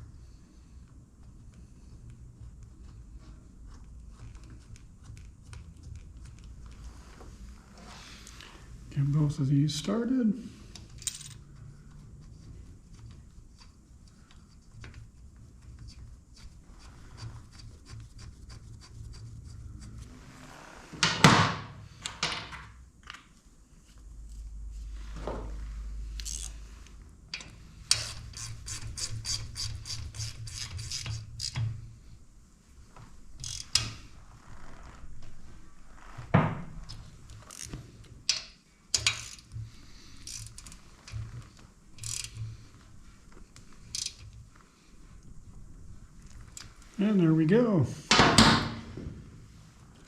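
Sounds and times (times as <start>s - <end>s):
hand ratchet clicking: 26.2s - 26.6s, 27.3s - 31.7s, 33.4s - 34.0s, 37.5s - 39.6s, 40.2s - 40.8s, 42.0s - 42.6s, 43.9s - 44.3s.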